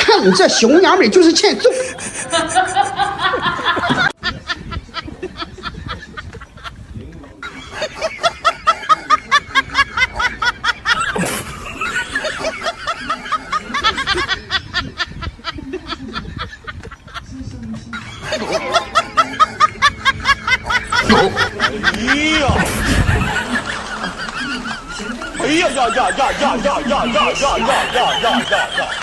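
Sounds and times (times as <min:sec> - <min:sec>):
person laughing: 0:00.0 - 0:06.5, 0:18.0 - 0:29.0.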